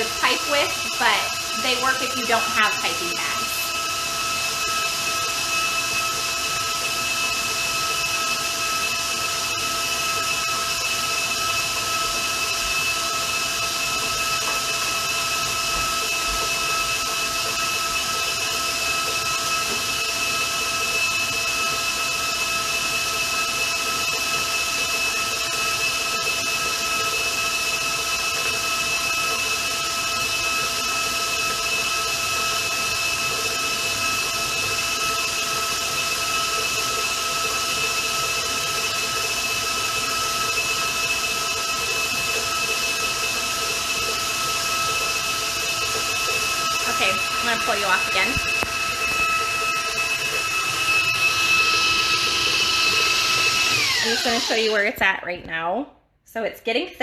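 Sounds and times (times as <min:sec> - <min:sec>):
electric mixer whining: 0:00.0 - 0:55.0.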